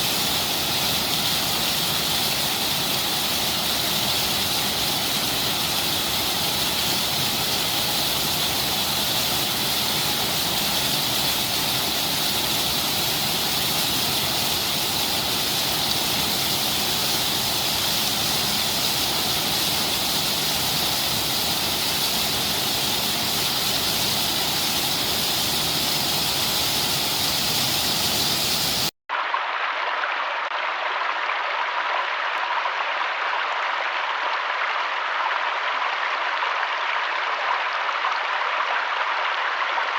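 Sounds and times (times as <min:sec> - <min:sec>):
water rushing: 0:00.0 - 0:28.9
duller thinner water sound: 0:00.0 - 0:39.9.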